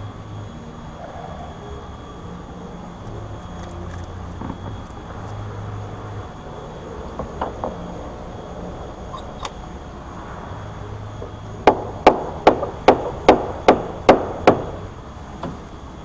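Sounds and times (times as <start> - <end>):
steady low hum: 0.0 - 16.0
hammer blows: 11.2 - 15.6.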